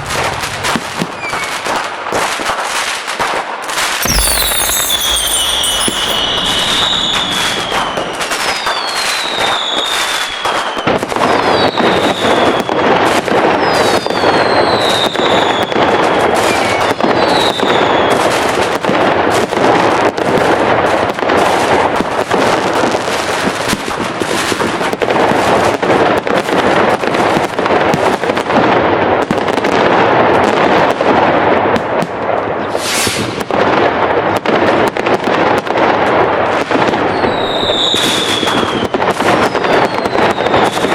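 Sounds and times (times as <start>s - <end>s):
falling firework whistles: 0.0s - 1.9s, 3.8s - 18.7s, 32.7s - 33.4s, 37.0s - 40.9s
fireworks bangs and crackling: 0.0s - 40.9s.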